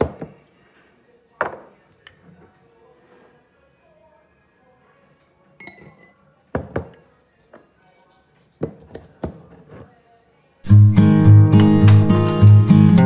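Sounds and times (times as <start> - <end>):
strummed acoustic guitar music: 10.7 - 13.0.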